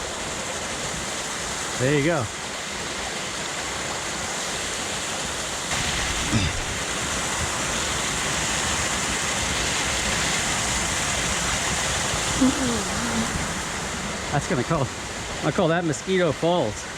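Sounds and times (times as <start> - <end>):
waterfall rushing: 0.0 - 16.9.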